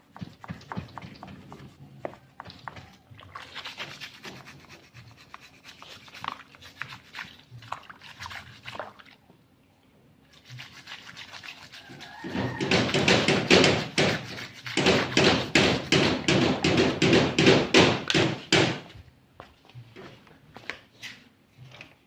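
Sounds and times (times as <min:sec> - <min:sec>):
hand scrubbing engine part: 0:00.0 - 0:08.9, 0:10.3 - 0:18.6.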